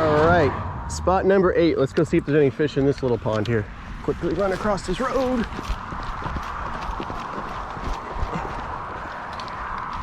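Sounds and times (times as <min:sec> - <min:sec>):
running footsteps on pavement: 0:02.4 - 0:10.0.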